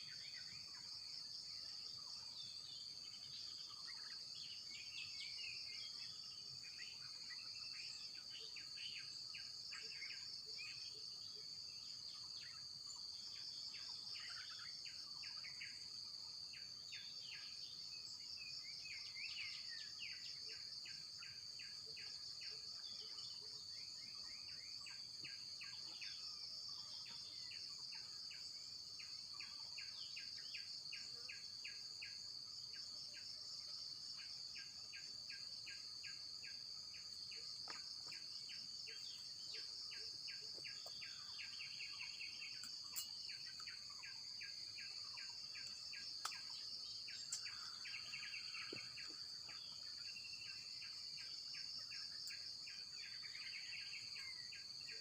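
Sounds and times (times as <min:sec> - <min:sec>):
insects droning: 0:00.0 - 0:55.0
short insect chirps: 0:16.5 - 0:55.0.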